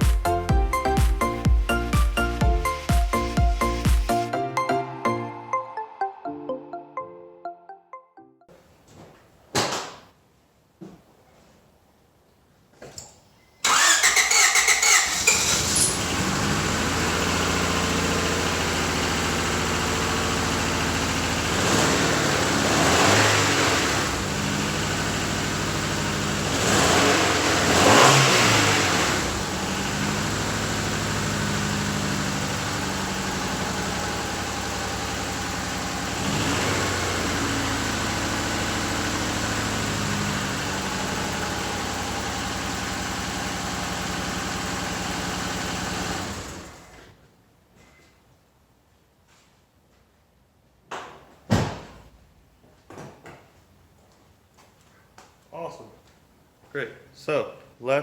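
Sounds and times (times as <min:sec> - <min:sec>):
car engine idling and revving: 0:13.7 - 0:47.1.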